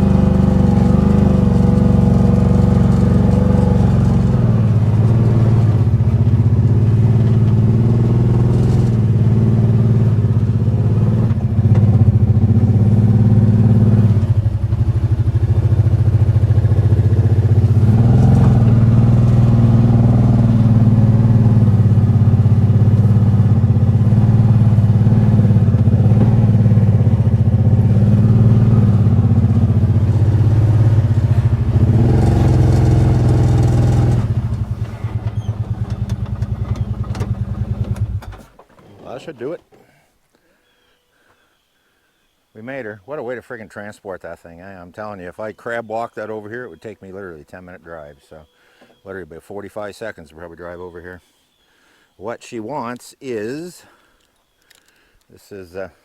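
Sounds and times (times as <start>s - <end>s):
engine running under load: 0.0s - 39.9s.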